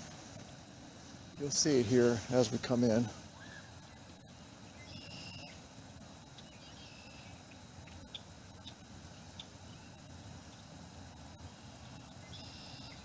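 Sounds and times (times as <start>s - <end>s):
faint outdoor background noise: 0.0s - 13.0s
high bird chirps: 4.8s - 5.6s, 12.2s - 13.0s.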